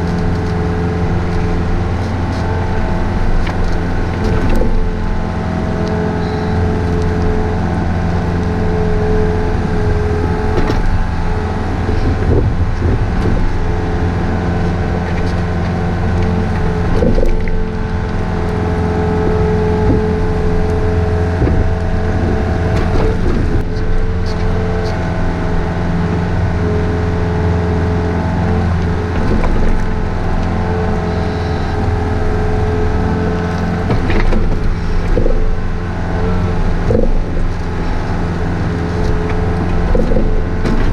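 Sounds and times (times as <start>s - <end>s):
digging knocks and scrapes: 0.0s - 9.1s, 9.8s - 25.5s, 28.5s - 40.9s
excavator engine running: 0.0s - 40.9s.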